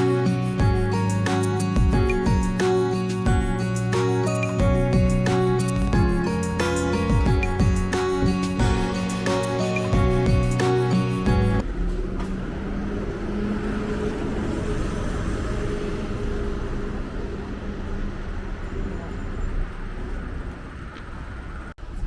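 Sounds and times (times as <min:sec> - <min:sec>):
vehicle engine humming: 0:00.0 - 0:22.0.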